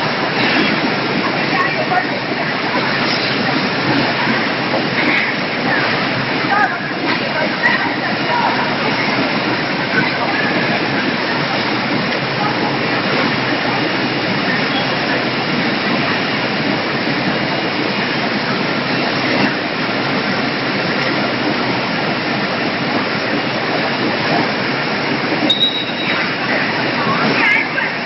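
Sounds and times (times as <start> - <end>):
processing machinery: 0.0 - 28.0
running water: 0.0 - 28.0
high squeak: 25.5 - 26.3.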